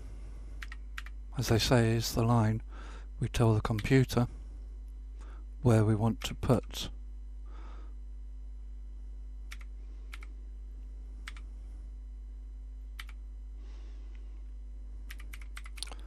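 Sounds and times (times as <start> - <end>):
low electrical hum: 0.0 - 16.0
keyboard keystrokes: 15.1 - 16.0.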